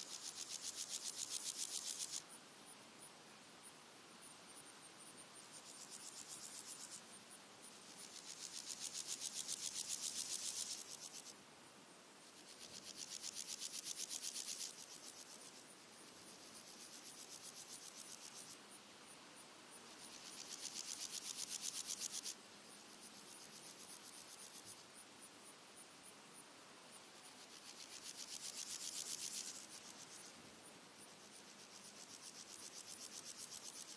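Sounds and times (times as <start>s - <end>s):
grasshoppers rasping: 0.0s - 2.2s, 7.8s - 11.4s, 12.3s - 18.6s, 19.9s - 24.8s, 27.3s - 30.4s, 31.0s - 33.9s
faint high insect ticking: 0.0s - 33.9s.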